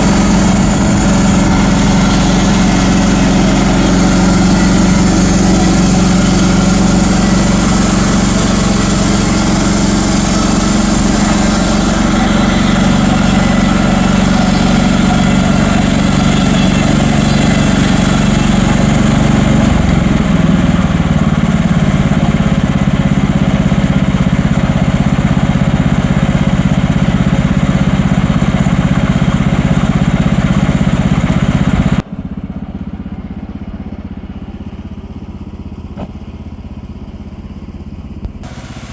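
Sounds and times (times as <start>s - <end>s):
saw cutting through log: 0.0s - 27.2s
sawmill engine running: 0.0s - 38.9s.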